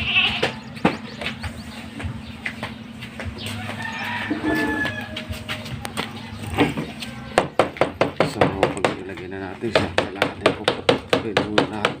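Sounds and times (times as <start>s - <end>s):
chicken calling: 0.0s - 2.2s, 3.3s - 7.4s.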